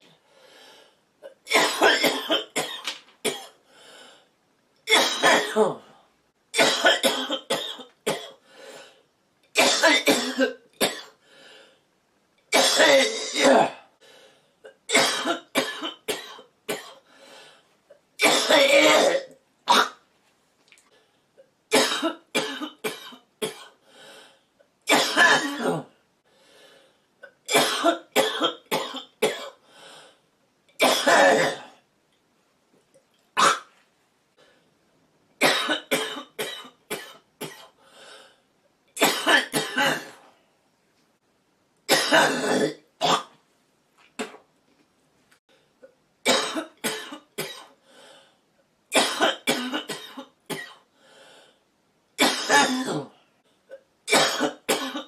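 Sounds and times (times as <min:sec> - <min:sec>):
woman coughing: 0:01.5 - 0:03.6, 0:04.9 - 0:05.8, 0:06.6 - 0:08.4, 0:09.6 - 0:11.1, 0:12.6 - 0:13.8, 0:14.9 - 0:17.0, 0:18.2 - 0:20.0, 0:21.8 - 0:23.7, 0:24.9 - 0:25.9, 0:27.5 - 0:29.6, 0:30.8 - 0:31.7, 0:35.4 - 0:37.7, 0:39.0 - 0:40.2, 0:41.9 - 0:43.3, 0:46.3 - 0:47.7, 0:49.0 - 0:50.8, 0:52.2 - 0:53.1, 0:54.1 - 0:55.0.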